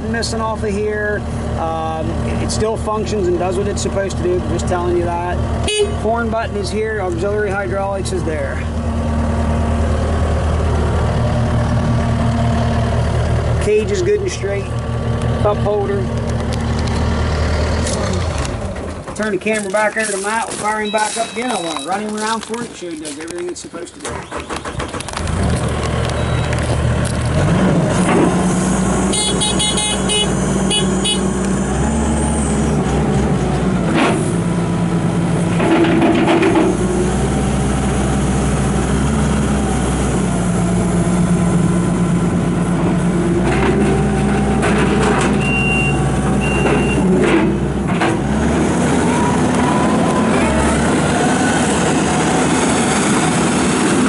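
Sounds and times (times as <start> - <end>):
diesel engine starting and running: 0.0 - 54.0
rapid electronic beeps: 20.8 - 22.0, 26.2 - 26.5
short beeps: 20.8 - 22.0, 26.2 - 26.6, 45.4 - 47.1.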